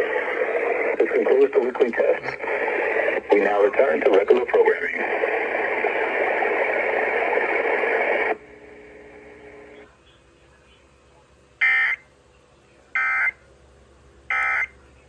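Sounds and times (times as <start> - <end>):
radio static hiss: 0.0 - 10.9.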